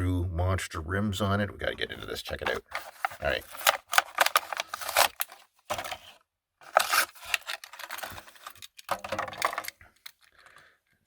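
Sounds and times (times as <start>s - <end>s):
plastic blister pack tearing: 2.5s - 10.2s.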